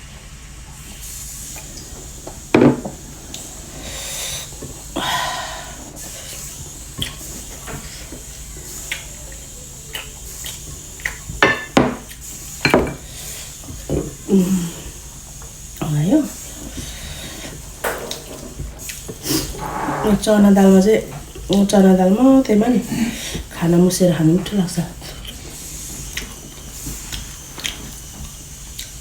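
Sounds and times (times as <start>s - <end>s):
food scraping and rustling: 18.1s - 20.6s.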